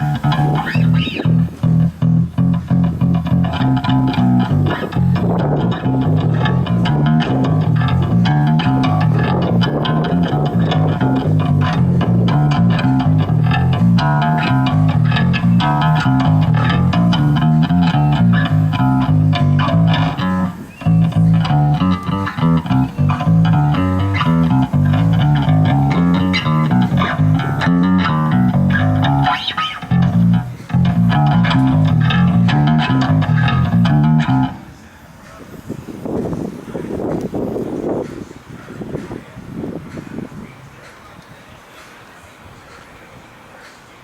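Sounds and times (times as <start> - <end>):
bass guitar line: 0.0 - 34.7
electric guitar: 0.0 - 34.7.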